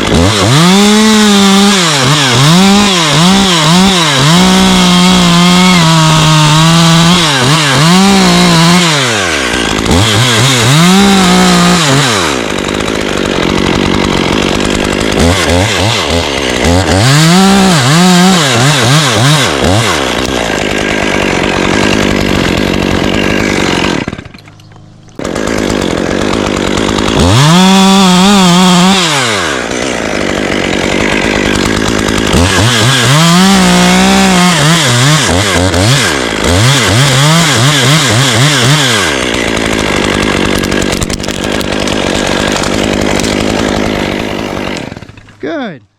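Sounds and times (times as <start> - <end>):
chainsaw revving while cutting wood: 0.0 - 45.8.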